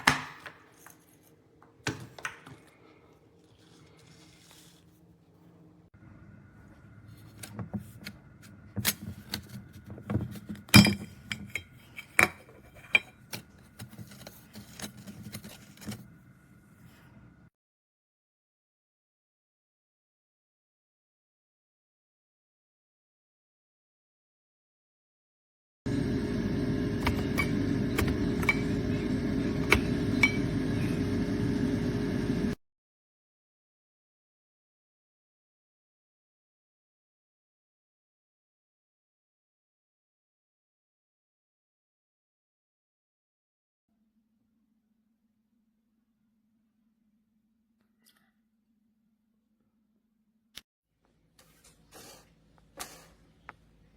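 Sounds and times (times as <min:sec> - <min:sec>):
low hum: 0:25.9 - 0:32.6.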